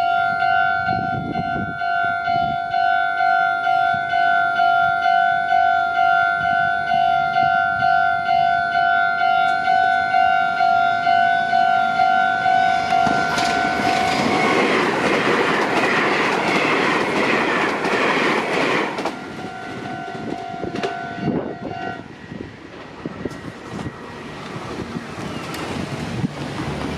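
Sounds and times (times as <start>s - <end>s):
two-tone crossing bell clanging: 0.0s - 14.8s, 19.0s - 22.4s
train wheels on rails: 9.2s - 26.9s.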